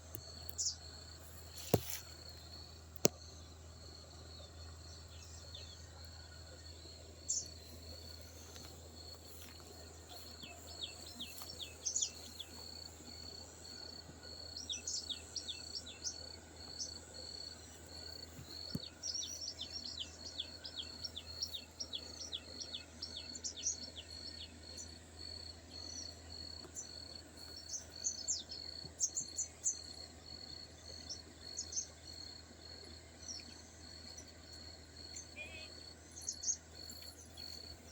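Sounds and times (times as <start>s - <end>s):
low steady hum: 0.0s - 37.9s.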